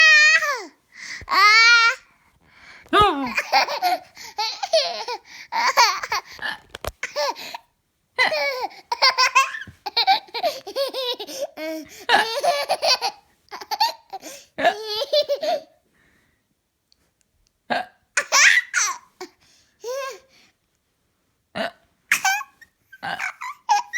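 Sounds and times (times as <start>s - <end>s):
small child giggling: 3.0s - 6.3s.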